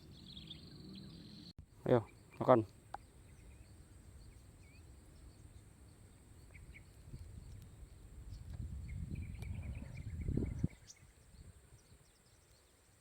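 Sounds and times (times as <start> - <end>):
faint bird chirps: 0.0 - 13.0.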